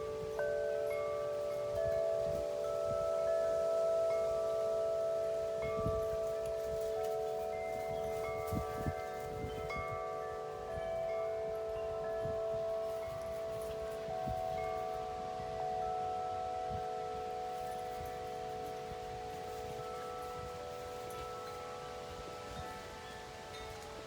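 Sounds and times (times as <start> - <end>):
wind buffeting microphone: 0.0 - 24.0
wind chimes ringing: 0.0 - 24.0.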